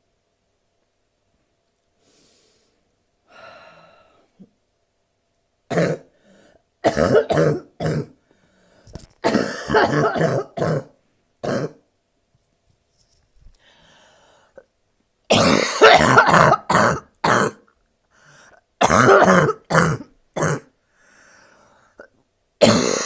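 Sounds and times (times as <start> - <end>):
woman coughing harshly: 5.7 - 6.1, 6.8 - 8.2, 9.2 - 11.8, 15.3 - 17.6, 18.8 - 20.7, 22.6 - 23.0.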